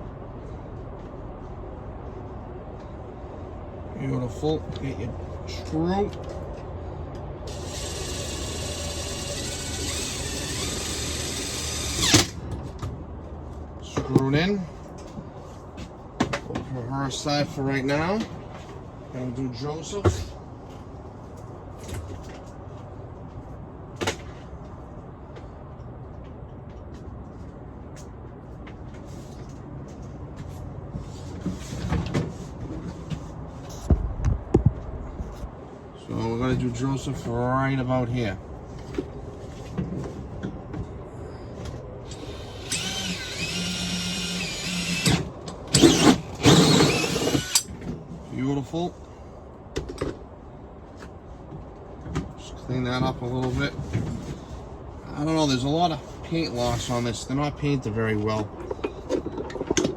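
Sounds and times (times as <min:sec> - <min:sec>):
cordless screw gun running: 0:07.5 - 0:12.4, 0:42.1 - 0:45.2, 0:45.8 - 0:47.7.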